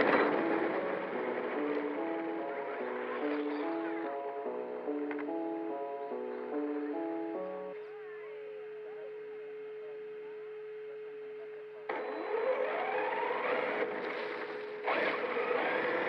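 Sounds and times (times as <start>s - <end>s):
electric motor whine: 11.9s - 16.0s.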